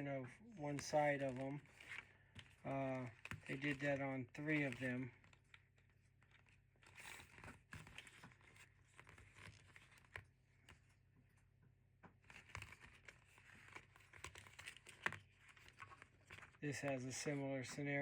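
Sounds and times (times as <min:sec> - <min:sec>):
ribbon cables rustling: 0:00.7 - 0:11.0, 0:12.2 - 0:17.8.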